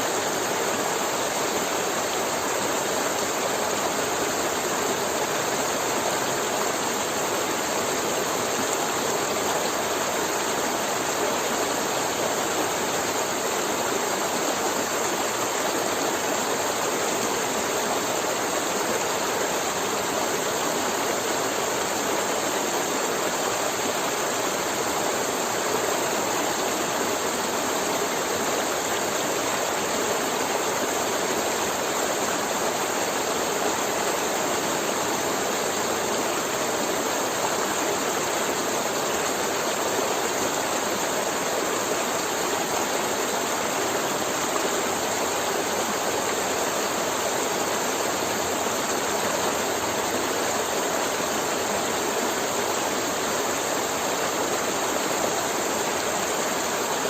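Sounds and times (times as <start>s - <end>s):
river water gurgling over rocks: 0.0s - 57.0s.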